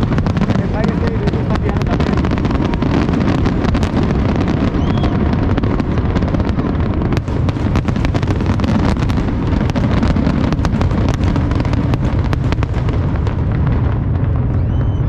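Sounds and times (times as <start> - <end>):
fireworks banging: 0.0 - 15.0
sharp firework cracks: 0.0 - 15.0.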